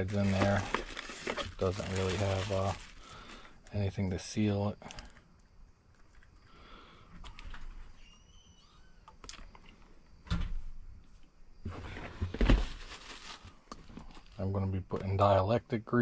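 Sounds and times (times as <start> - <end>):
packaging rustling: 0.0 - 3.7, 12.3 - 14.4.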